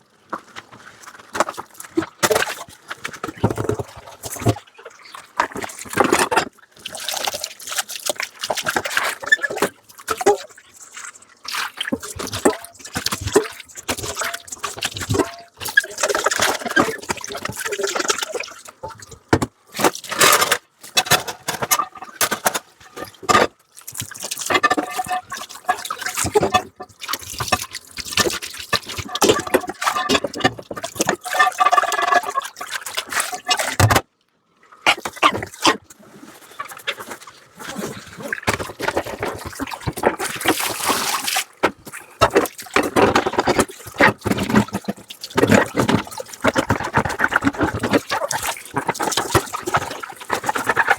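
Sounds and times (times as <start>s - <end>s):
tap water splashing: 38.5s - 50.9s.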